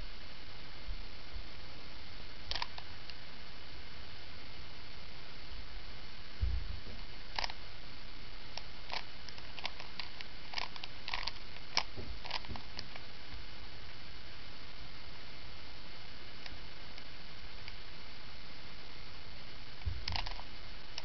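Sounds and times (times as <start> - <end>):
steady hiss: 0.0 - 21.0
puzzle cube clicking: 2.5 - 2.9, 7.3 - 7.6, 8.6 - 13.0, 20.0 - 21.0
dull low bump: 6.4 - 7.0.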